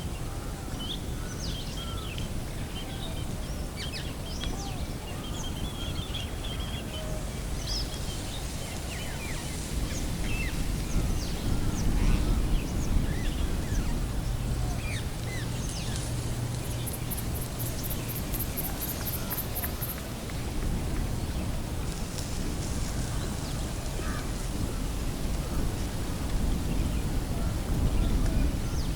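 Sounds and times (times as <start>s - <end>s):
birds chirping and calling: 14.6s - 20.0s.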